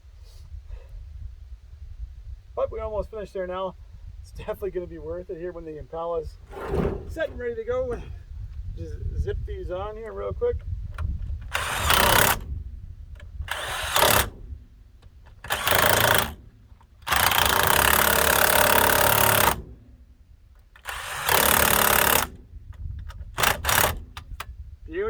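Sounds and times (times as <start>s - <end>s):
impact wrench bursts: 6.4s - 8.0s, 11.0s - 20.0s, 20.6s - 24.5s.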